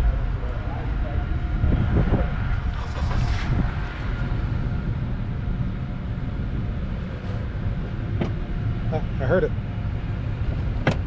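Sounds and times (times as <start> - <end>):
car engine rumble from inside: 0.0 - 11.0
short rushing noise: 1.8 - 4.9.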